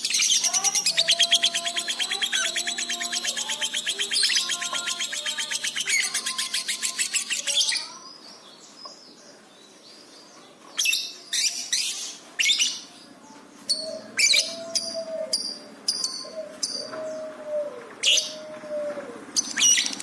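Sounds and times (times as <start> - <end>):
bird chattering trill: 0.0 - 8.1, 19.3 - 20.0
sharp bird chirps and squeaks: 0.0 - 8.1, 19.4 - 20.0.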